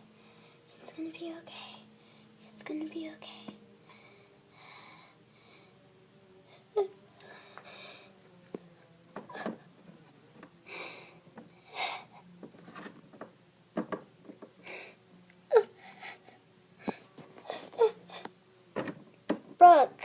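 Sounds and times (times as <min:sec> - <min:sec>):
child whimpering: 0:06.5 - 0:07.0, 0:15.5 - 0:18.3
child sniffling and sobbing: 0:10.7 - 0:12.3, 0:14.6 - 0:18.3.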